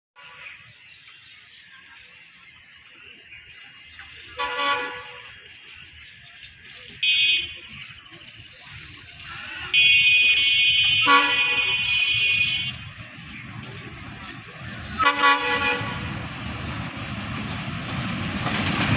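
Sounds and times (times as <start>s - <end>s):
locomotive air horn blasts: 4.4s - 5.3s, 7.0s - 7.7s, 9.7s - 13.0s, 15.0s - 16.2s.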